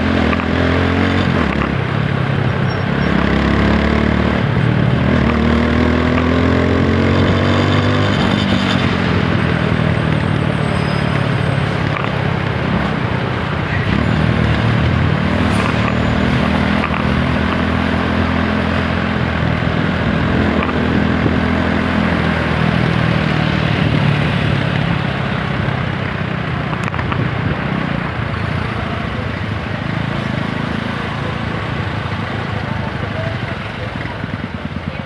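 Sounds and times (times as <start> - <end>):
motorcycle engine running: 0.0 - 35.0
wind and road noise: 0.0 - 35.0.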